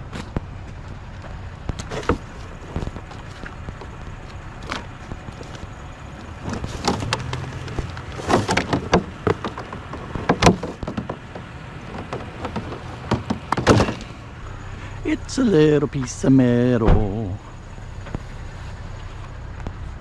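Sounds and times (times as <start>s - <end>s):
steady low hum: 0.0s - 20.0s
scrap metal and plastic clanking: 1.7s - 5.7s, 6.3s - 14.2s.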